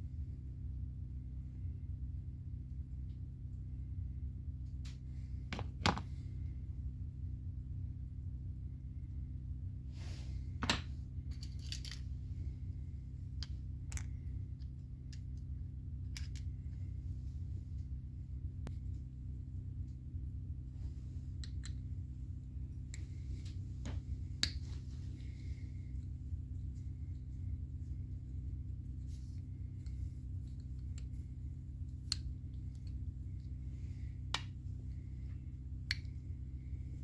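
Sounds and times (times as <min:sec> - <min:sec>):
steady low hum: 0:00.0 - 0:37.0
small metal parts clicking: 0:11.3 - 0:12.0.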